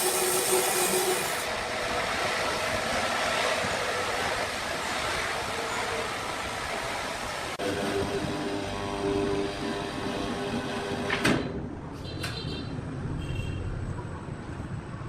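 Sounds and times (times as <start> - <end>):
saw cutting with loud hiss: 0.0 - 1.6
machinery hum: 0.0 - 11.2.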